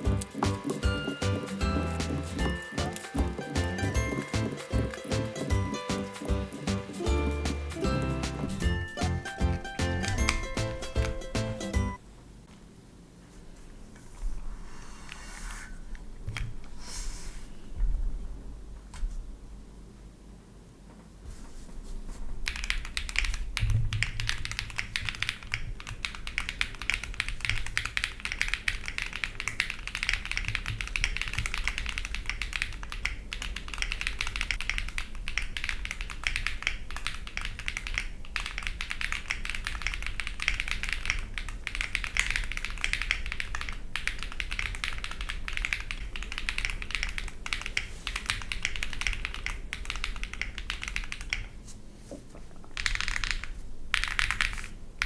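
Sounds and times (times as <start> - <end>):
fast typing on mechanical keyboard: 0.0 - 11.9, 22.4 - 51.6, 52.6 - 55.0.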